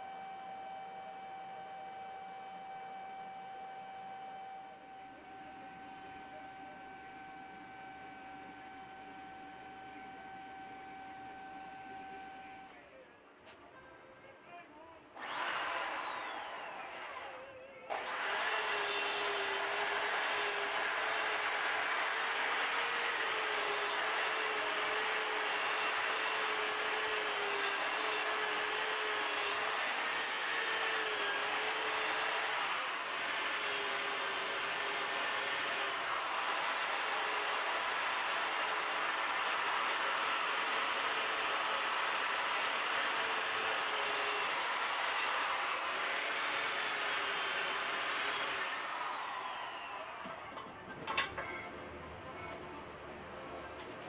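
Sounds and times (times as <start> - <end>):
power tool motor whining: 15.2 - 50.6.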